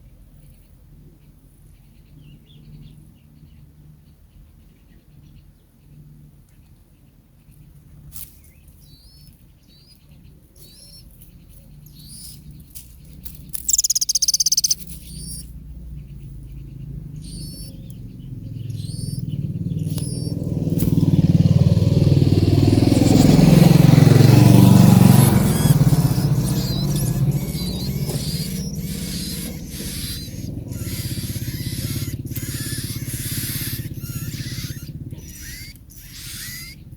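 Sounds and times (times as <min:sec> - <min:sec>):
small bird chirping: 0:08.2 - 0:36.9
passing vehicle engine rumble: 0:13.7 - 0:35.7.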